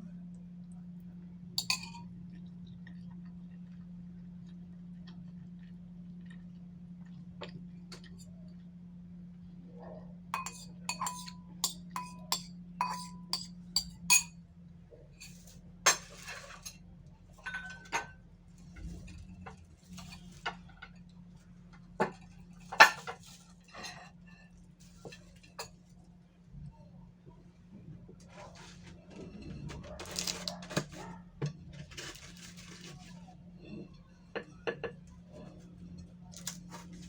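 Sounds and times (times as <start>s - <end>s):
utensils clinking against dish: 1.6s - 2.0s, 10.4s - 14.3s, 15.2s - 16.8s, 17.4s - 18.2s, 22.1s - 24.2s
utensils scraping dish: 10.4s - 14.2s.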